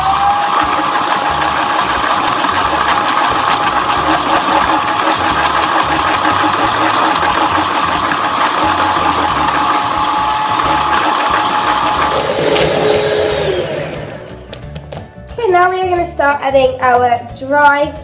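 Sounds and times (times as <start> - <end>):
electric mixer whisking batter: 0.0 - 14.9.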